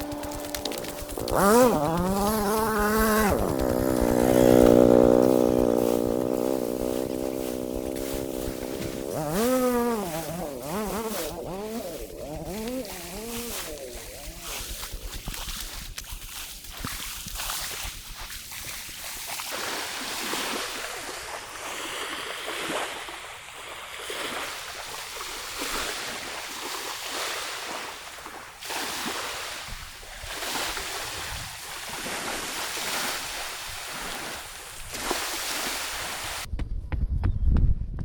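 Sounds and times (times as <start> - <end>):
wind: 0.0 - 38.0
sea waves washing onto shore: 19.0 - 36.5.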